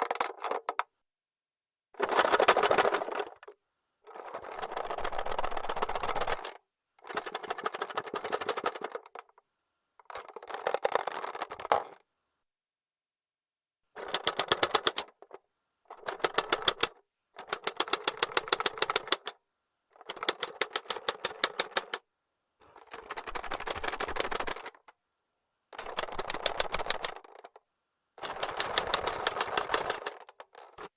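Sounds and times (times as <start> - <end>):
toy clockwork clicking: 14.0 - 15.1, 15.9 - 19.4, 20.0 - 22.0, 22.8 - 24.9, 25.8 - 27.5, 28.2 - 30.9.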